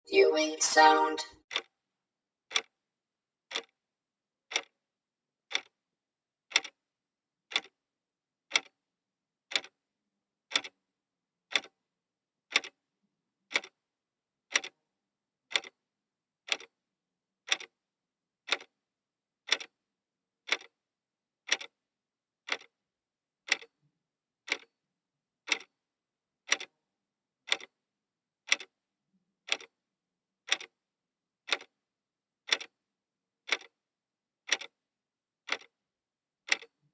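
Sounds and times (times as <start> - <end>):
clock ticking: 5.5 - 5.7, 7.5 - 7.7, 8.5 - 8.7, 9.5 - 9.7, 11.5 - 11.7, 12.5 - 12.7, 13.5 - 13.7, 16.5 - 16.7, 17.5 - 17.7, 18.5 - 18.7, 19.5 - 19.8, 20.5 - 20.7, 21.5 - 21.7, 22.5 - 22.7, 23.5 - 23.7, 25.5 - 25.7, 26.5 - 26.7, 27.5 - 27.7, 28.5 - 28.7, 29.5 - 29.7, 30.5 - 30.7, 31.5 - 31.7, 32.5 - 32.8, 33.5 - 33.7, 34.5 - 34.8, 35.5 - 35.7, 36.5 - 36.8.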